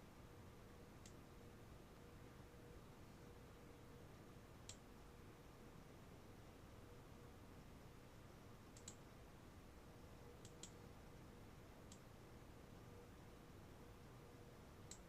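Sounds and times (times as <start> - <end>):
computer mouse clicks: 4.6 - 4.9, 8.7 - 9.0, 10.4 - 10.8, 11.8 - 12.1.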